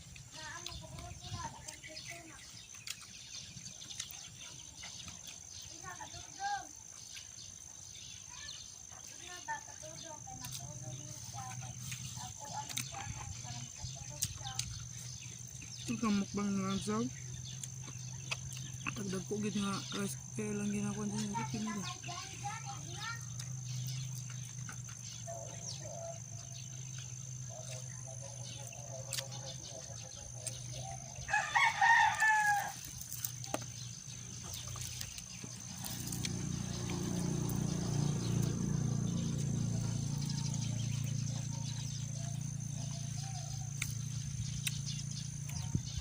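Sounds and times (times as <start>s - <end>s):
rooster crowing: 31.2s - 32.9s.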